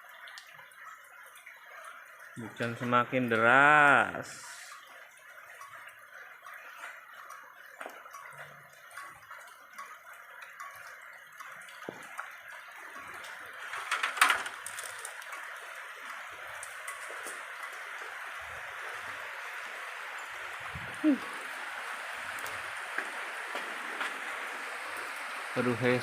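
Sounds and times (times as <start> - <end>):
drip-like ticks: 0.0 - 26.0
heavy rain hissing: 16.3 - 26.0.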